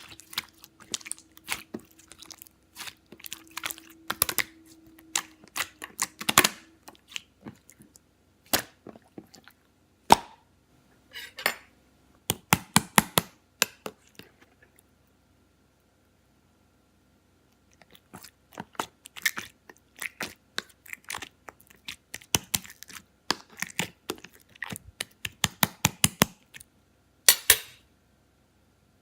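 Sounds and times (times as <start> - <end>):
close-up crunching and clicking: 0.0 - 9.0, 17.5 - 26.7.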